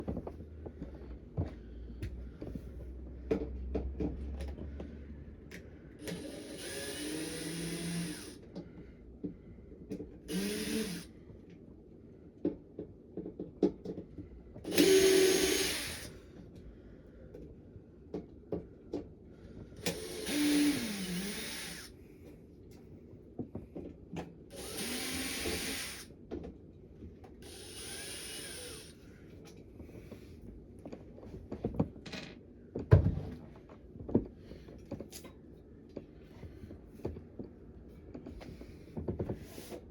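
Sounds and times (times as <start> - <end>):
cordless drill driving screws: 6.0 - 8.4, 10.3 - 11.1, 14.6 - 16.2, 19.8 - 21.9, 24.5 - 26.1, 27.4 - 28.9.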